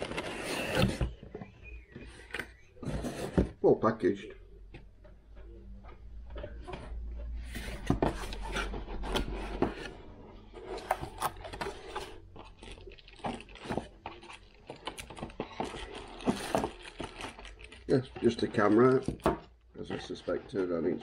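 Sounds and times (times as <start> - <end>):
packaging scraping and rubbing: 0.0 - 1.2, 7.4 - 19.2.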